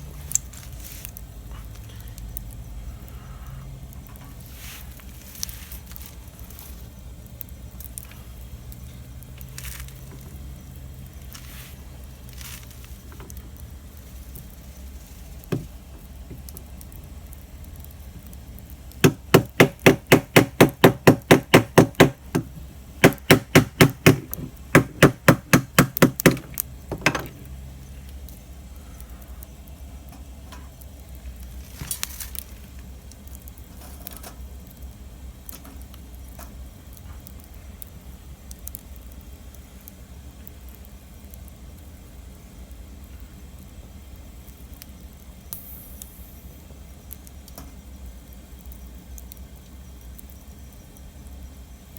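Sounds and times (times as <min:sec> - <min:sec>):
campfire crackling and popping: 0:00.0 - 0:51.9
loud rapid knocks: 0:19.0 - 0:27.3.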